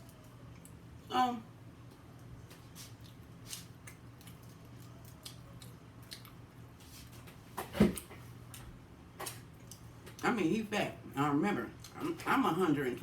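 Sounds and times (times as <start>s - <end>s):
chewing crunchy food: 0.0s - 1.0s, 1.8s - 7.2s, 8.0s - 10.2s.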